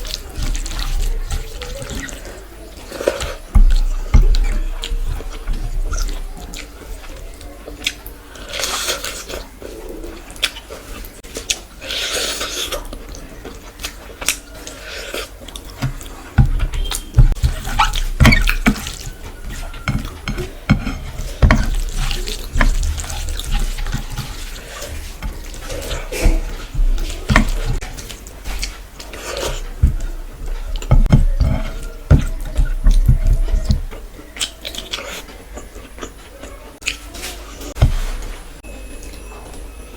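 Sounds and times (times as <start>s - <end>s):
wet chewing and squelching: 0.0s - 39.7s
low thumps: 16.4s - 27.9s.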